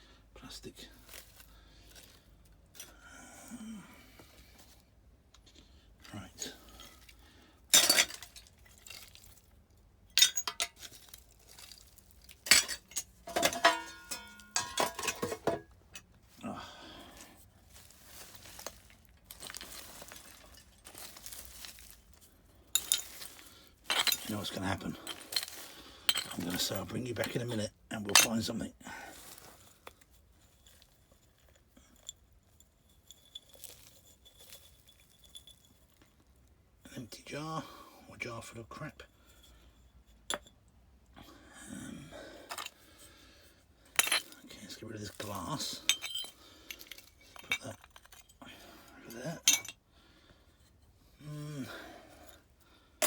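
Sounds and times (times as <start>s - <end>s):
glass shards clinking: 7.7s - 9.2s, 10.1s - 16.1s, 22.7s - 27.5s, 28.1s - 28.4s, 44.0s - 44.4s, 45.1s - 48.4s, 49.1s - 49.8s.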